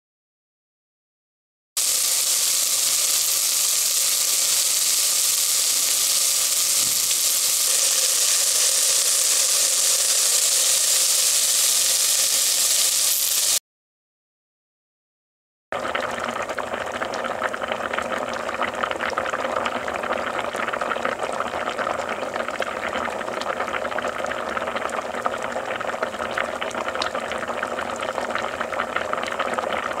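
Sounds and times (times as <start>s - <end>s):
water bubbling in a pot: 1.8s - 12.2s, 15.8s - 30.0s.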